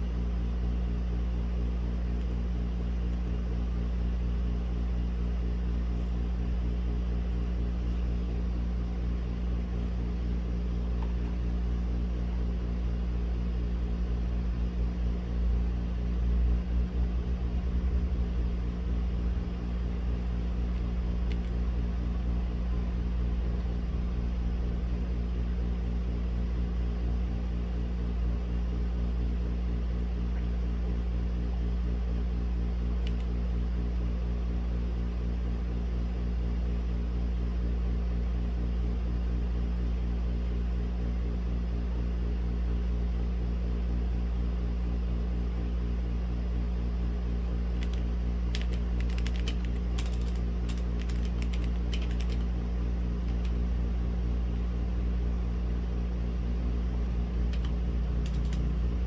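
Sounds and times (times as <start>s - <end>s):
low mechanical hum: 0.0s - 59.0s
faint clicks: 47.4s - 48.0s, 48.6s - 52.4s, 57.5s - 58.7s.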